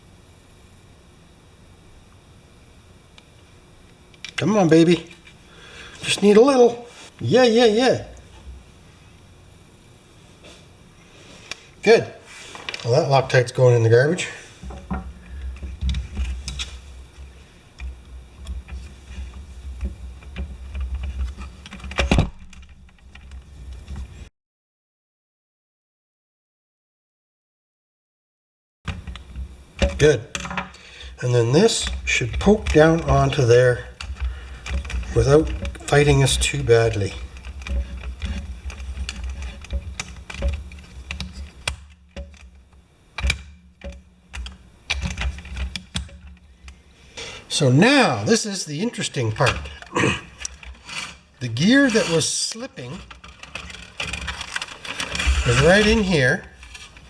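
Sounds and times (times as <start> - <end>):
low steady hum: 0.0 - 24.3, 28.9 - 57.0
plastic toy parts clicking: 53.0 - 56.0.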